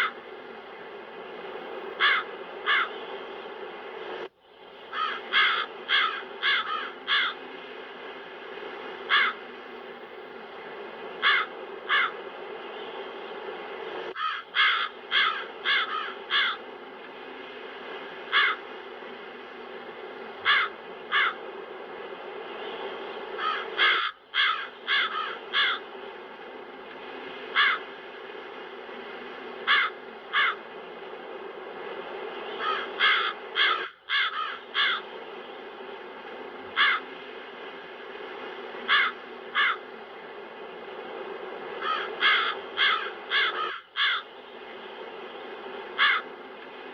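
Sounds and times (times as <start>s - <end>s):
crows cawing: 0.0s - 0.2s, 2.0s - 3.0s, 4.9s - 7.4s, 9.1s - 9.4s, 11.2s - 12.2s, 14.2s - 16.7s, 18.3s - 18.7s, 20.4s - 21.4s, 23.4s - 25.9s, 27.5s - 27.9s, 29.6s - 30.6s, 32.6s - 35.1s, 36.8s - 37.1s, 38.9s - 39.9s, 41.8s - 44.3s, 46.0s - 46.3s.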